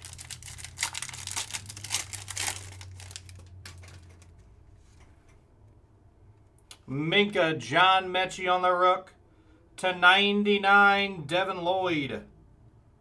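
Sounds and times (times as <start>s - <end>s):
plastic packaging crinkling: 0.0s - 4.5s.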